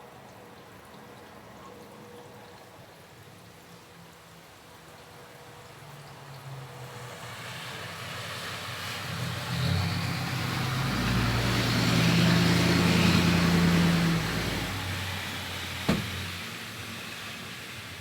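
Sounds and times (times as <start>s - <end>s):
tyre hiss on wet street: 0.1s - 18.0s
car engine hum: 10.5s - 16.4s.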